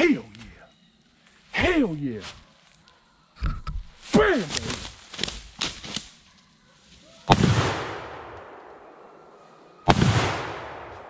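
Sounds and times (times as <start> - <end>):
shotgun shots: 7.3 - 9.2, 9.9 - 11.0
rolling echo: 7.3 - 11.0.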